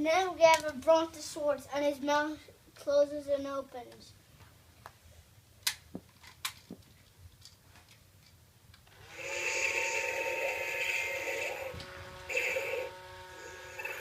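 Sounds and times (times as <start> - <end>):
toy whirring buzz: 8.9 - 14.0.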